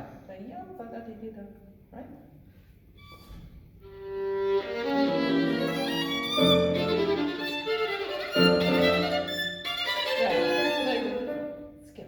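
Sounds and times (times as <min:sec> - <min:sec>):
violin playing accented double stops: 0:03.0 - 0:11.3.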